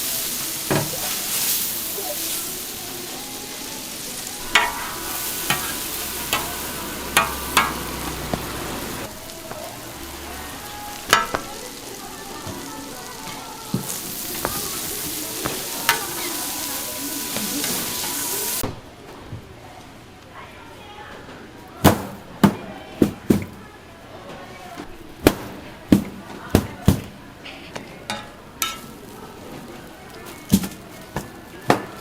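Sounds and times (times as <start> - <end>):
food sizzling on griddle: 0.0 - 18.6, 28.1 - 32.0
metal spatula scraping griddle: 4.0 - 11.6.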